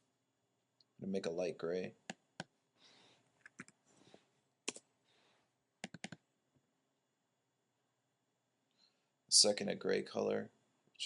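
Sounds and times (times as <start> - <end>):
computer mouse clicks: 5.8 - 6.2.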